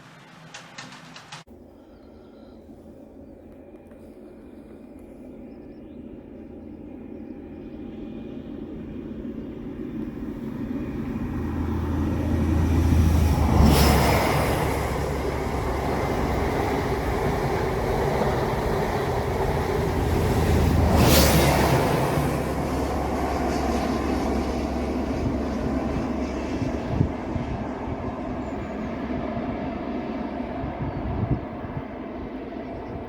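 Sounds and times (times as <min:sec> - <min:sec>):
model train running on track: 0:00.0 - 0:01.5, 0:09.9 - 0:27.6.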